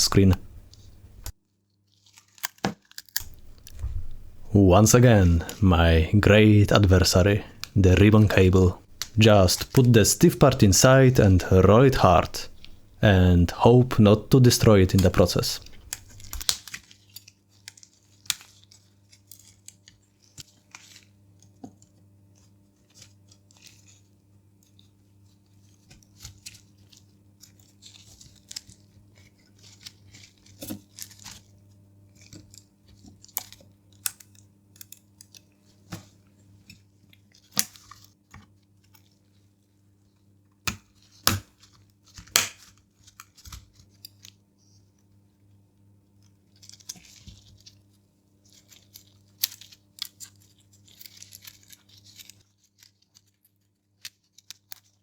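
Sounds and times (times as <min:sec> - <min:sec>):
faint steady hum: 0:00.0 - 0:01.3, 0:03.2 - 0:16.6.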